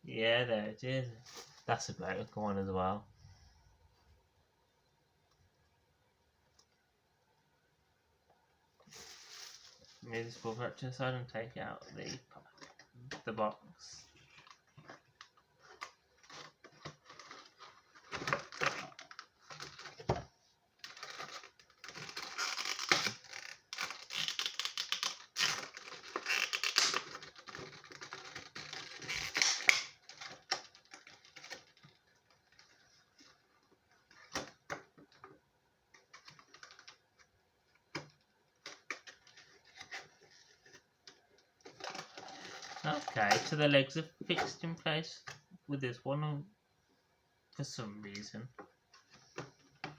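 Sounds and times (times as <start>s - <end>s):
plastic packaging crinkling: 20.8s - 34.6s, 41.6s - 43.6s.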